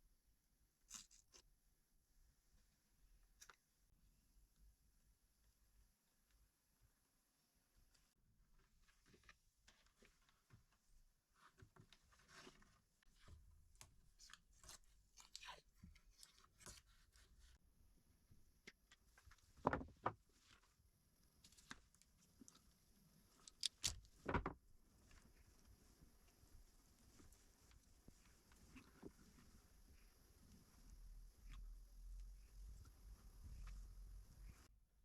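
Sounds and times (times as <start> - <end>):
small parts clicking and tapping: 23.4 - 24.5.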